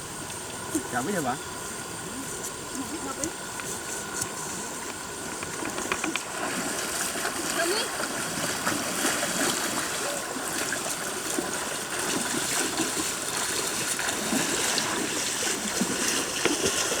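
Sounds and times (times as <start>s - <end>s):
trickle of running water: 0.0s - 17.0s.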